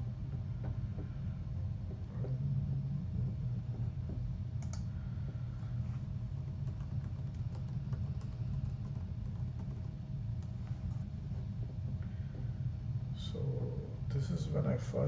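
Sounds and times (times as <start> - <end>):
steady low hum: 0.0 - 15.0
keyboard typing and clicks: 6.4 - 10.6.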